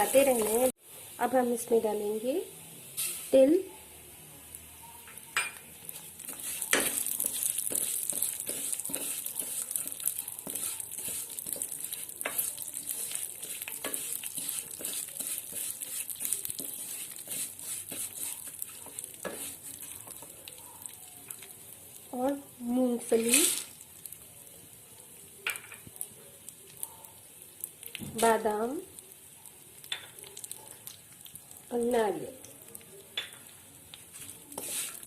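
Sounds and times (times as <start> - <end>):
spoon scraping pan: 0.0 - 0.7, 2.9 - 3.5, 5.0 - 20.6, 23.0 - 23.8, 33.3 - 35.0
seeds sizzling in hot oil: 0.0 - 35.0.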